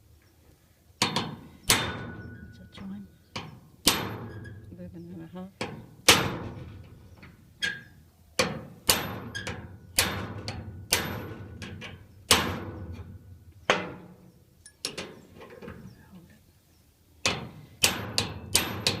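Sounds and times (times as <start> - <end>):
hammer striking metal padlock: 17.8 - 19.0.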